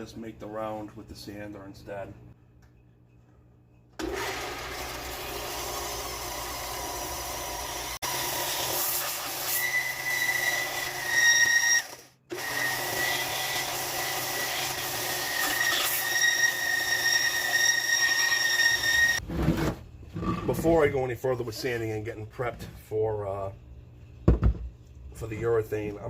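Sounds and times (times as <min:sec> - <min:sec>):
electric sander on wood: 0:04.1 - 0:09.5.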